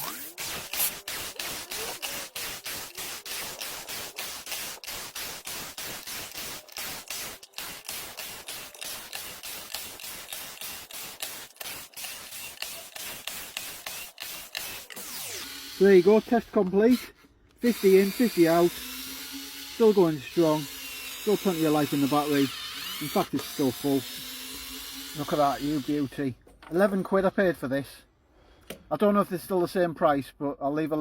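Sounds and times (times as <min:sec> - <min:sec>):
cordless screwdriver motor: 0:00.0 - 0:26.1
screwdriver rising whine: 0:13.9 - 0:17.1, 0:22.3 - 0:26.0.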